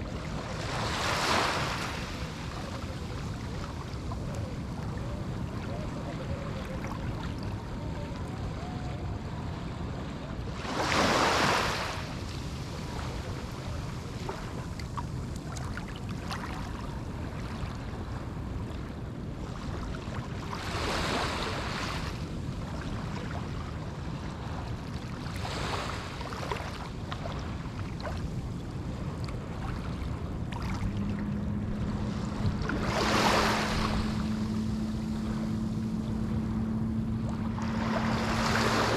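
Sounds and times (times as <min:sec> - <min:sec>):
small waves breaking on beach: 0:00.0 - 0:38.9
low hum: 0:28.7 - 0:38.9.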